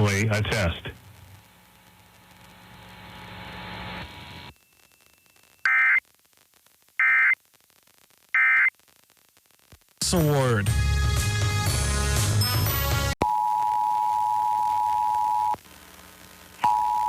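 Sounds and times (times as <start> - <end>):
faint hiss with low hum: 0.0 - 10.5, 14.8 - 17.0.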